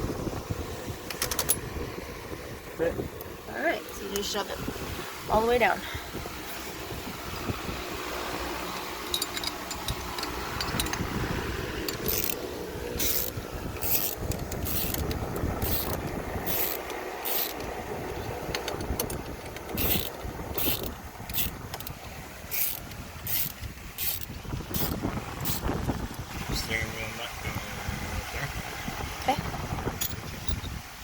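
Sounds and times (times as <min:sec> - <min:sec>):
steady background hiss: 0:00.0 - 0:29.3
metallic scrapes and clicks: 0:08.7 - 0:11.0, 0:11.8 - 0:17.7, 0:18.6 - 0:25.7.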